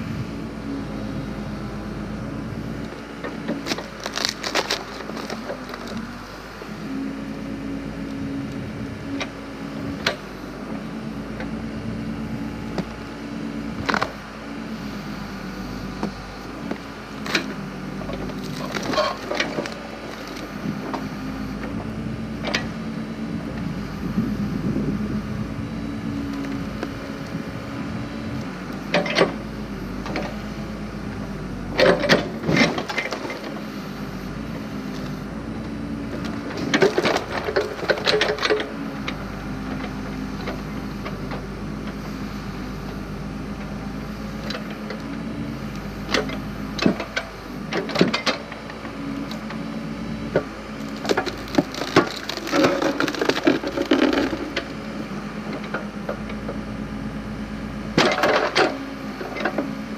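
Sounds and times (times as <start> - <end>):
backhoe engine running: 0.0 - 59.9
wood cracking and splintering: 2.8 - 6.1, 16.7 - 21.0, 36.1 - 39.1, 50.4 - 54.8.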